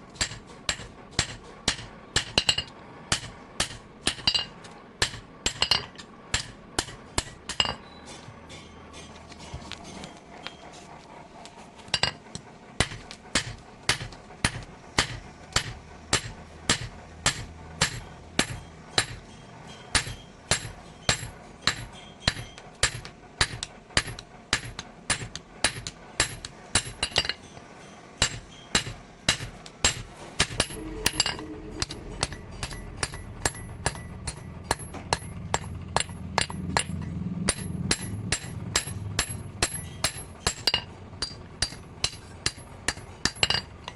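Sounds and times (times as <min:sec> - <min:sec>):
hammer striking metal on anvil: 0:00.2 - 0:09.2, 0:11.9 - 0:12.2, 0:12.8 - 0:43.9
low hum: 0:30.5 - 0:42.6.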